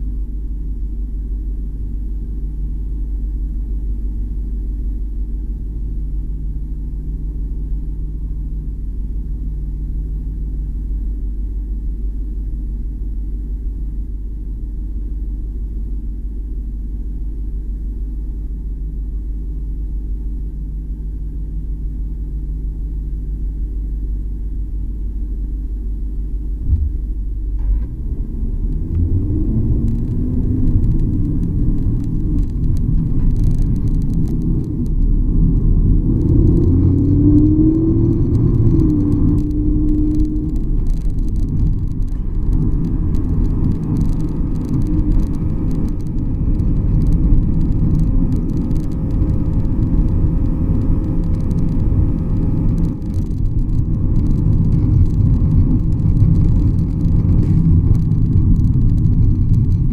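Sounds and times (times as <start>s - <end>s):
car rumbling: 0.0s - 59.9s
suspension clicks and creaks: 26.6s - 59.9s.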